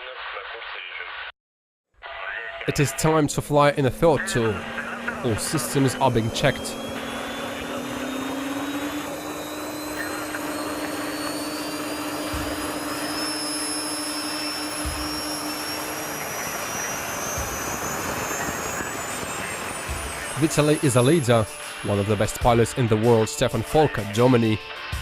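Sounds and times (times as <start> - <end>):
model jet turbine whine: 3.3 - 23.2
steady low hum: 3.4 - 21.9.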